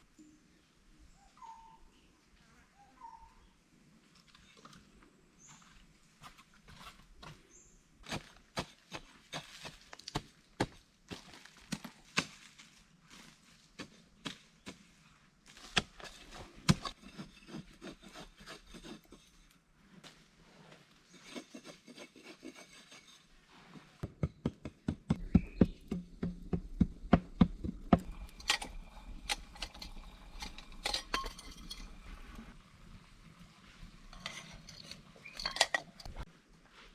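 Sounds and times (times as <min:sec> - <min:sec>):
hand tools tapping wood: 0:24.0 - 0:28.2.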